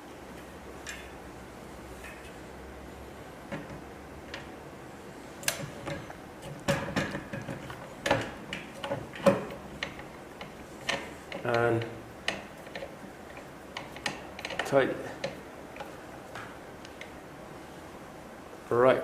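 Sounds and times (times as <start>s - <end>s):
metal parts clicking and knocking: 5.4s - 15.4s.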